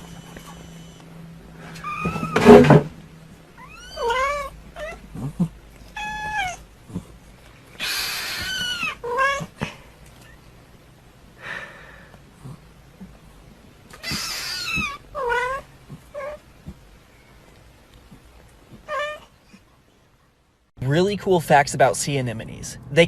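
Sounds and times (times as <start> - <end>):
cat meowing: 1.7 - 2.5, 3.6 - 5.1, 5.9 - 6.6, 7.8 - 9.6, 13.9 - 16.4, 18.8 - 19.3.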